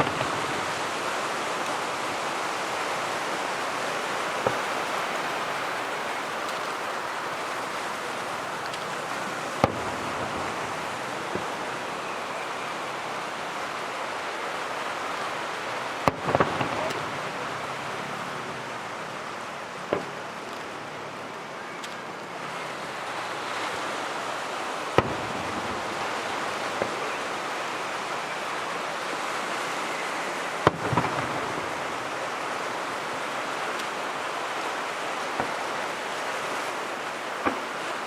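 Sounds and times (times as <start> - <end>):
fireworks bangs: 0.0 - 13.2, 15.8 - 18.3, 25.0 - 27.3, 30.6 - 38.0
surf hissing on beach: 0.0 - 38.0.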